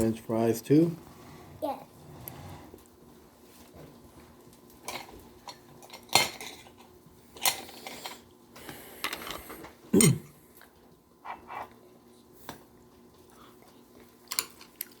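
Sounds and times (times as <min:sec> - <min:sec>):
cutlery clinking against dishes: 0:04.8 - 0:08.2.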